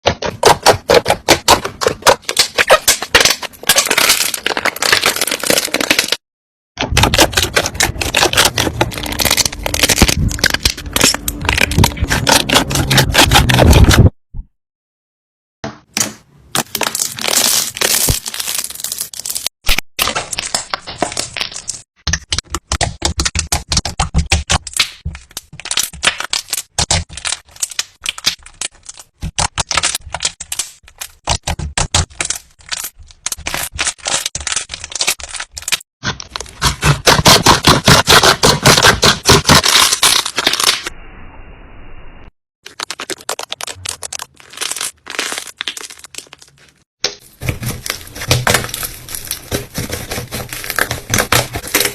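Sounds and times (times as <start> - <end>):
slime crackling and popping: 7.0 - 13.8, 16.6 - 40.9, 42.7 - 51.9.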